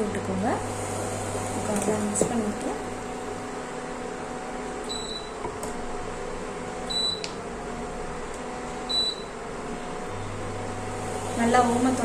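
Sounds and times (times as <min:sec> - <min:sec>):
induction stove electrical hum: 0:00.0 - 0:12.0
short high-pitched beeps: 0:04.9 - 0:05.3, 0:08.9 - 0:09.2.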